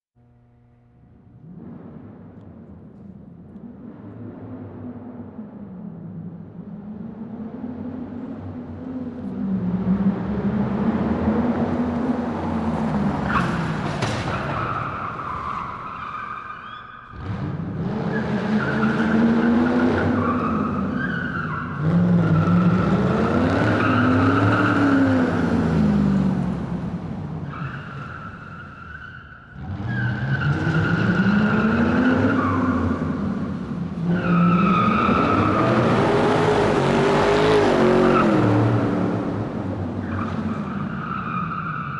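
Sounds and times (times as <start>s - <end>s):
car engine revving: 0.2s - 16.4s, 17.0s - 41.6s
car tyres squealing: 11.5s - 26.3s, 27.2s - 41.9s.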